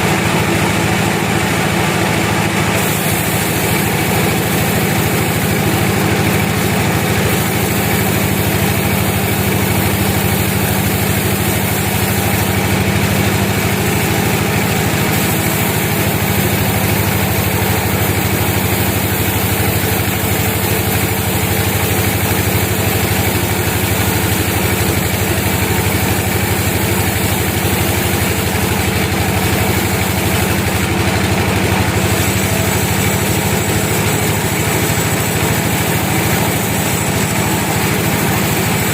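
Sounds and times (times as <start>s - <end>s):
sawmill engine humming: 0.0s - 38.9s.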